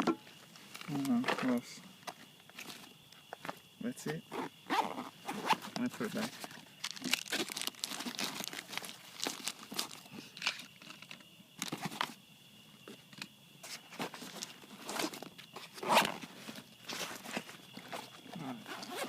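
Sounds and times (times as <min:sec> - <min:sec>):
gear rustling in nylon backpack: 0:04.2 - 0:11.0, 0:13.9 - 0:19.0.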